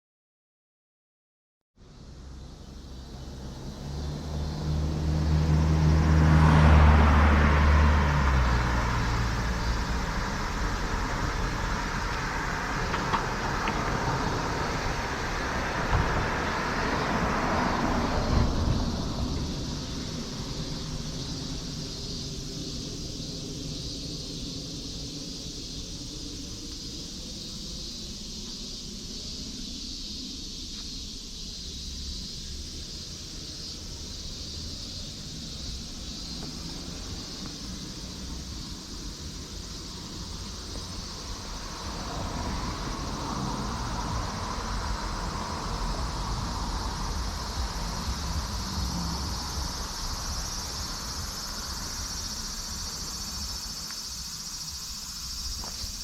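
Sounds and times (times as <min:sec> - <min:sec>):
insect chorus buzzing: 0:01.8 - 0:56.0
low outdoor rumble: 0:01.9 - 0:56.0
rushing noise: 0:29.7 - 0:56.0.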